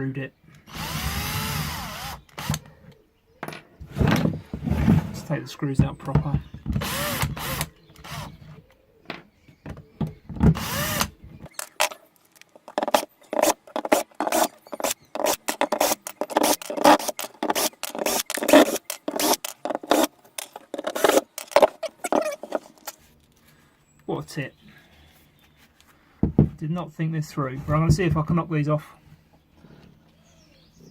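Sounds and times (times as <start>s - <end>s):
power drill spinning: 0.6s - 2.7s, 6.7s - 8.4s, 10.5s - 11.6s, 12.8s - 23.0s.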